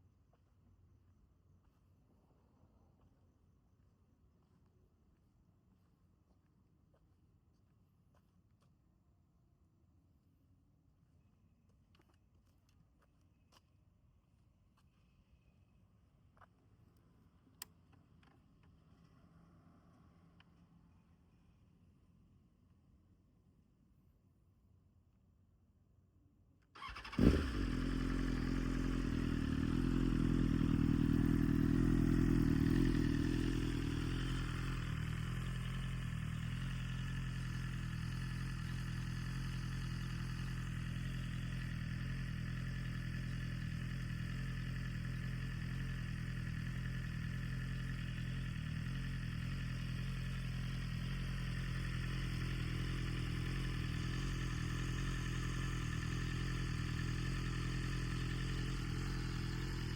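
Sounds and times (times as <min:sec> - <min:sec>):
motorcycle engine idling: 0:26.8 - 0:59.9.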